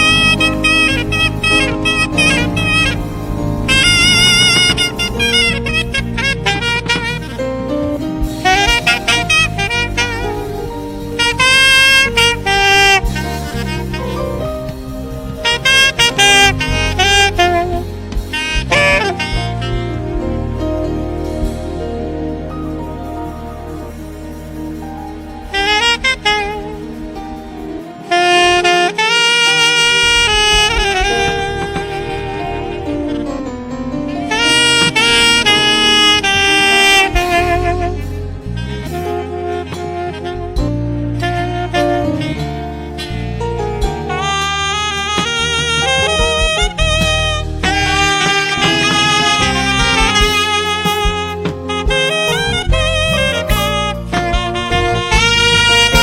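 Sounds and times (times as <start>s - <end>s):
bass and keyboard backing: 0.0s - 56.0s
saxophone melody: 0.0s - 56.0s.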